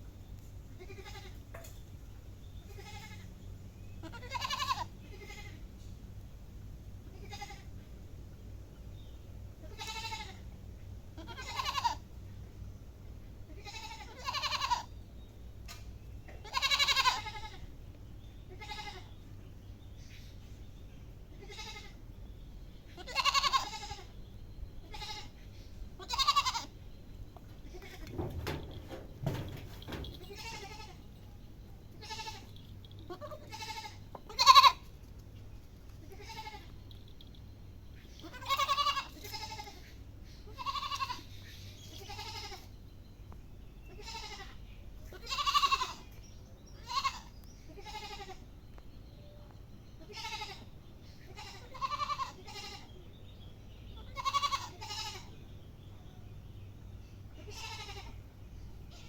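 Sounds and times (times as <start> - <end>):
goat bleating: 0.8 - 1.4, 2.7 - 3.3, 4.0 - 5.6, 7.1 - 7.7, 9.6 - 10.5, 11.2 - 12.1, 13.5 - 14.9, 16.3 - 17.7, 18.4 - 19.2, 21.3 - 22.0, 22.9 - 24.1, 24.8 - 25.4, 26.0 - 26.8, 27.6 - 31.1, 32.0 - 34.9, 36.0 - 36.9, 38.1 - 41.3, 41.9 - 42.7, 43.9 - 46.1, 46.8 - 48.4, 50.0 - 53.0, 54.0 - 55.3, 57.4 - 58.3.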